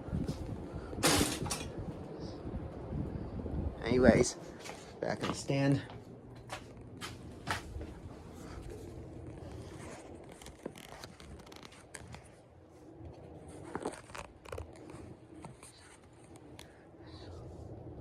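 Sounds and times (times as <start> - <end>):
ceiling fan humming: 0.0 - 10.6.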